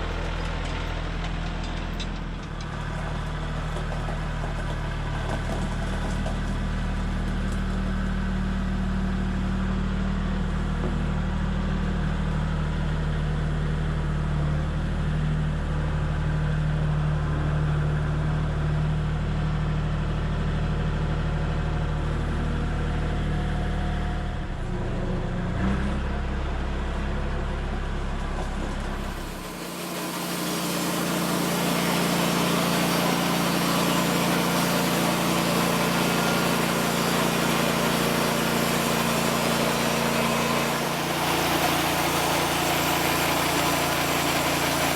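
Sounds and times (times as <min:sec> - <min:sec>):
small engine running: 0:27.2 - 0:44.9.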